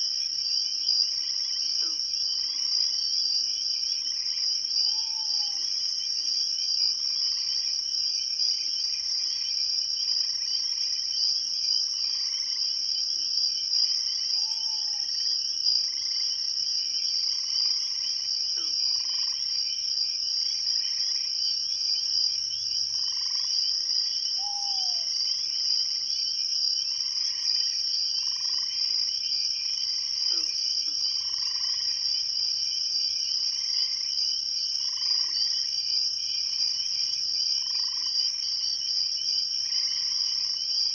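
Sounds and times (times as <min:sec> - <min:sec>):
cricket trill: 0:00.2 - 0:40.9
frogs calling: 0:00.4 - 0:05.7, 0:14.0 - 0:16.4, 0:17.3 - 0:19.8, 0:20.4 - 0:25.6, 0:26.9 - 0:32.2.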